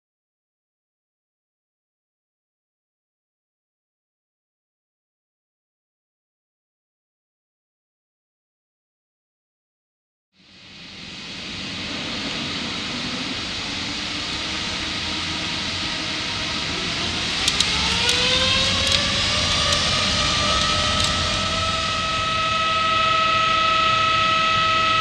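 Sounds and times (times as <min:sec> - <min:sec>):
jet engines roaring: 0:10.9 - 0:25.0
rising siren-like whine: 0:13.3 - 0:25.0
light clicks: 0:17.4 - 0:21.2.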